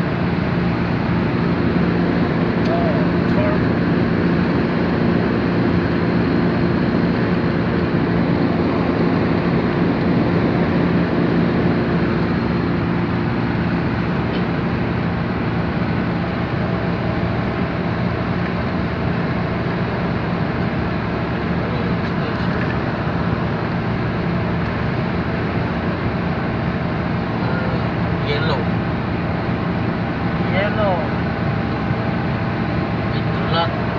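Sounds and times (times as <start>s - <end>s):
road rush inside car: 0.0s - 33.9s
vehicle engine hum: 0.0s - 33.9s.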